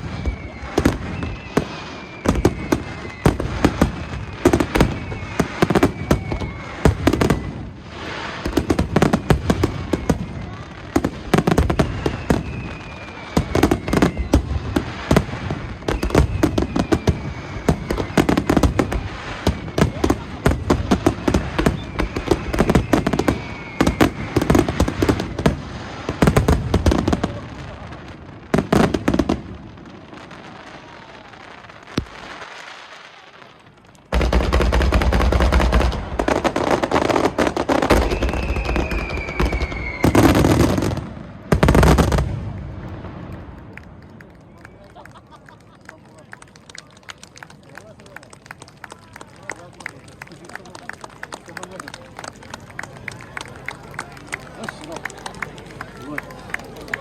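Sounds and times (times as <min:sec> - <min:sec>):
falling whistles: 0:00.0 - 0:25.3, 0:37.2 - 0:41.0
fireworks launches and bursts: 0:00.0 - 0:45.8
fireworks crackling: 0:00.0 - 0:57.0.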